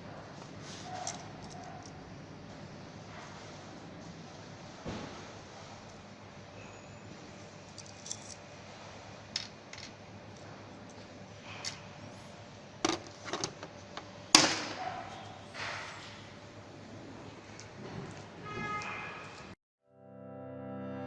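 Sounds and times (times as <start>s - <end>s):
hand tools clicking and clinking: 0.9s - 2.0s, 7.7s - 8.4s.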